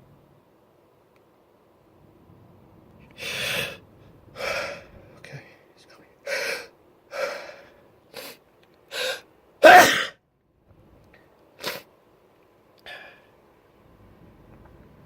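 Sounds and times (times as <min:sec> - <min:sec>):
quiet breath sounds: 0:03.0 - 0:09.3, 0:12.8 - 0:13.6
sharp in-breaths: 0:03.2 - 0:03.8
person sneezing: 0:09.0 - 0:10.2, 0:11.6 - 0:11.9.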